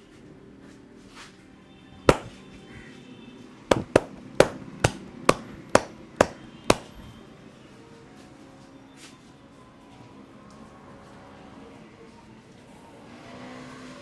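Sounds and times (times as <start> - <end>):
hands slapping a head: 2.1 - 2.4, 3.7 - 7.1.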